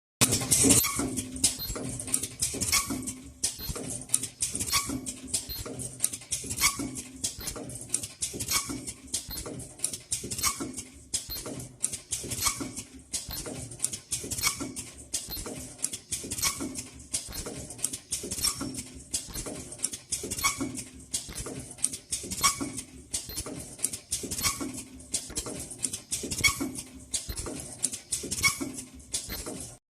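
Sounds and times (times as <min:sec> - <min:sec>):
short machine tones: 0:00.2 - 0:05.8, 0:06.5 - 0:07.7, 0:08.4 - 0:09.6, 0:10.3 - 0:15.7, 0:16.3 - 0:17.6, 0:18.4 - 0:21.5, 0:22.2 - 0:23.7, 0:24.3 - 0:25.4, 0:26.3 - 0:27.7, 0:28.3 - 0:29.7
machine clicks and knocks: 0:00.2 - 0:29.8.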